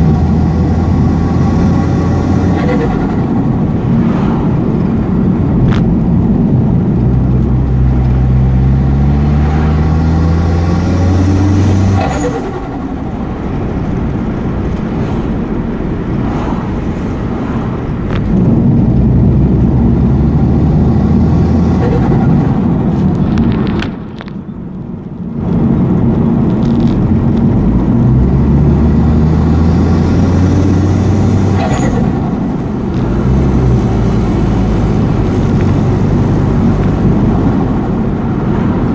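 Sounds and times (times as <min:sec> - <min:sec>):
turbo flutter: 0:00.0 - 0:24.3
turbocharged engine accelerating: 0:00.0 - 0:38.9.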